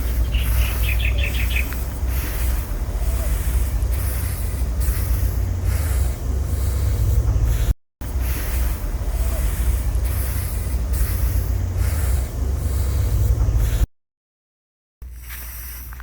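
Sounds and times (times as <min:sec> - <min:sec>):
high chirps: 0:00.0 - 0:05.2
rice grain being raked: 0:00.0 - 0:13.4, 0:15.1 - 0:16.0
steady low rumble: 0:00.0 - 0:13.9.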